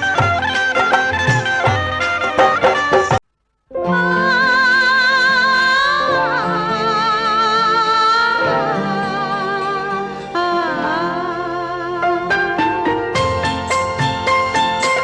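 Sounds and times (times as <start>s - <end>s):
wavering melody with accompaniment: 0.0s - 3.2s.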